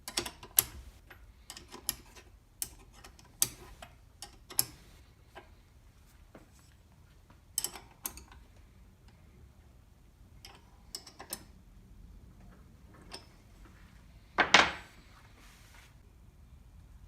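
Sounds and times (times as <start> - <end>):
metal tools clicking and tapping: 0.0 - 5.5, 7.5 - 9.2, 10.4 - 11.5, 12.9 - 13.4.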